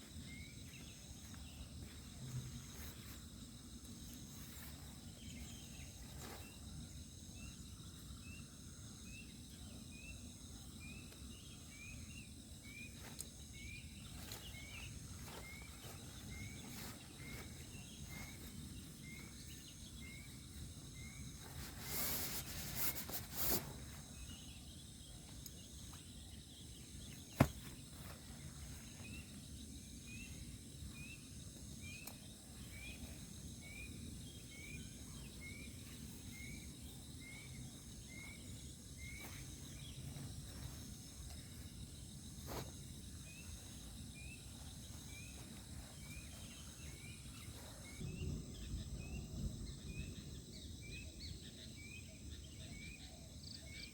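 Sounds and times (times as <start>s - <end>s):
rustle: 0.0s - 8.4s, 9.0s - 52.9s
insects trilling: 0.0s - 53.9s
rising insect chirp: 0.0s - 53.9s.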